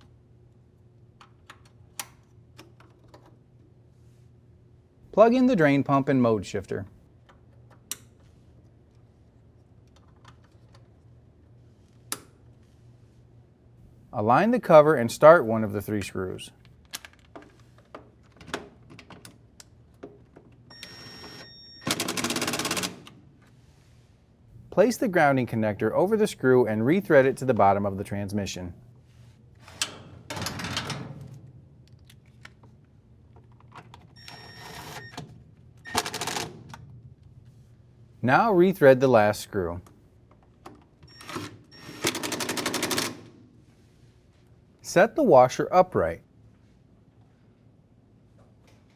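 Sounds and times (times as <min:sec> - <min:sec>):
low steady hum: 0:03.2 - 0:17.2, 0:23.2 - 0:34.6.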